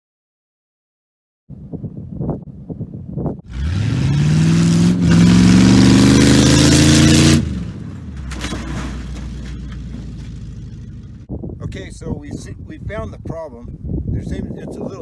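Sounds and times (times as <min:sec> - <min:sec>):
vehicle engine revving: 0:03.5 - 0:11.3
knocks and rattles: 0:07.7 - 0:11.3.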